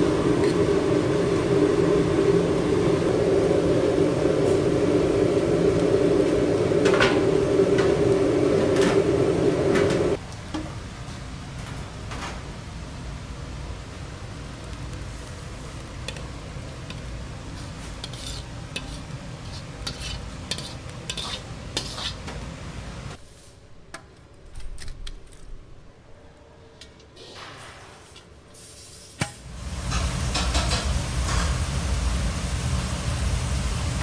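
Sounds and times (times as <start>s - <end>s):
loud low rumbling: 0.0s - 10.2s
utensils and dishes clinking: 29.7s - 31.7s.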